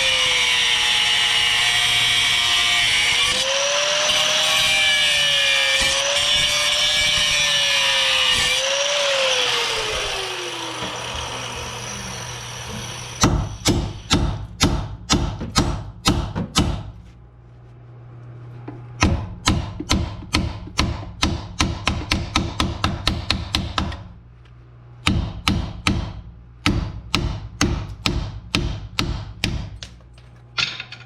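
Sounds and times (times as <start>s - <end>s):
power tool cutting metal: 0.0s - 14.1s.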